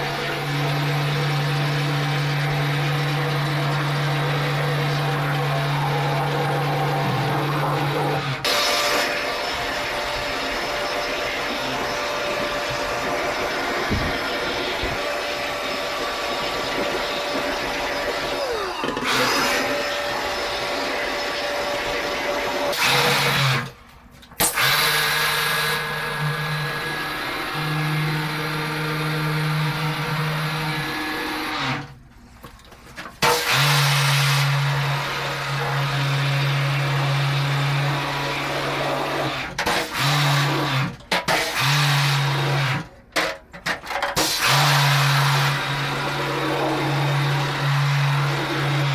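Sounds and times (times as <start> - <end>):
machine motor running: 0.0 - 23.4.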